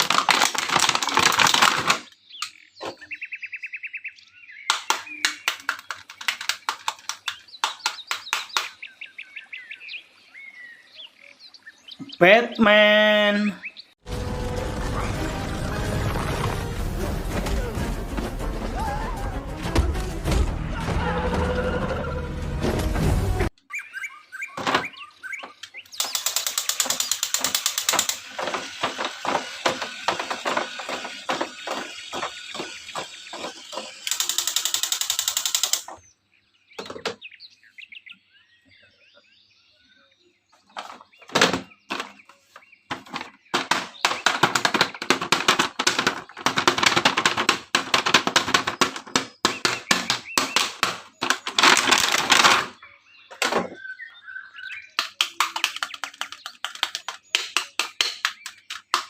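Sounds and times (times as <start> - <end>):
plastic and cardboard rustling: 0.0 - 2.2, 26.0 - 34.0, 40.6 - 52.8
small clicks and knocks: 4.7 - 8.8, 25.4 - 36.0, 42.9 - 52.7, 55.0 - 59.0.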